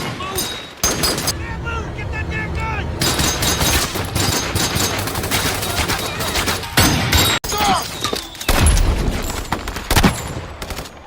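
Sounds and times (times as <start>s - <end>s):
rapid small-arms gunfire: 3.1s - 7.1s.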